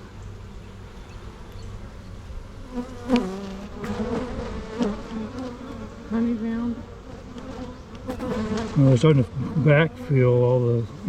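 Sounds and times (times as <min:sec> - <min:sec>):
bee flying past: 0:00.0 - 0:11.0
honeybees buzzing: 0:00.0 - 0:11.0.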